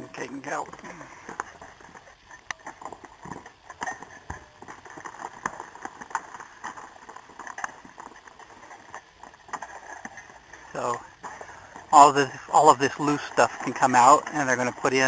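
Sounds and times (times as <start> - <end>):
footsteps on gravel: 0.1 - 15.0.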